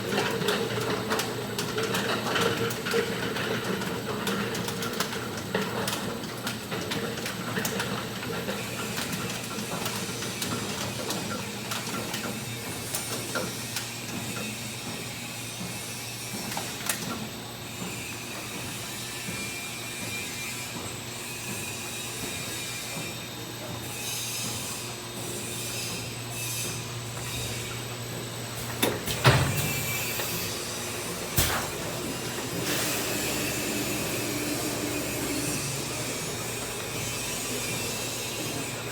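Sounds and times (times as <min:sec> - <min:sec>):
machine hum: 0:27.0 - 0:38.2.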